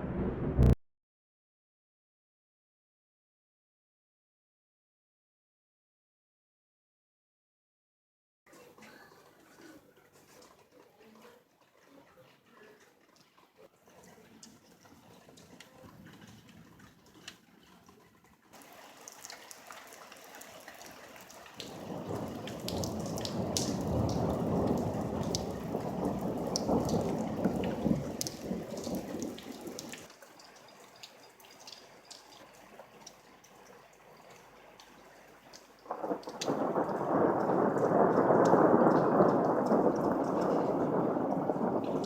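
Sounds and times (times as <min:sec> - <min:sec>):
thunder rumbling: 0:00.0 - 0:00.8, 0:21.6 - 0:30.1, 0:35.9 - 0:42.0
rain dripping: 0:13.1 - 0:42.0.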